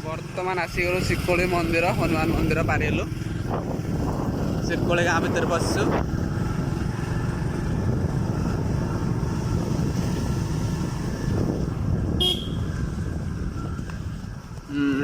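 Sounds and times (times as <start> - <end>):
motorcycle engine rumbling: 0.0 - 15.0
high horn toot: 12.2 - 12.8.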